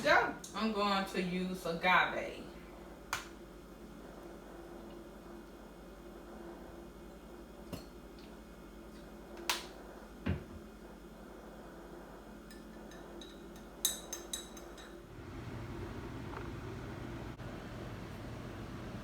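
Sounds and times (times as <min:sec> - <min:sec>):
spoon clinking in a cup: 0:12.5 - 0:15.0.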